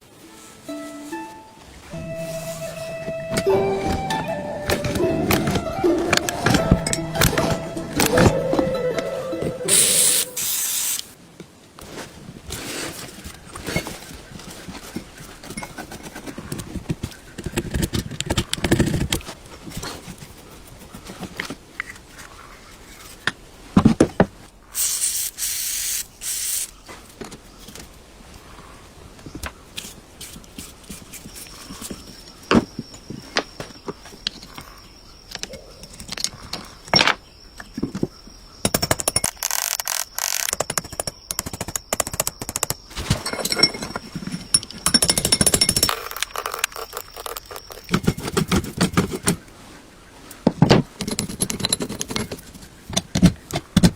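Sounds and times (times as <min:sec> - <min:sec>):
metal parts clicking and scraping: 0:09.7 - 0:11.1, 0:38.7 - 0:49.4, 0:51.0 - 0:53.1
short burst of hiss: 0:09.7 - 0:11.2, 0:24.8 - 0:26.8.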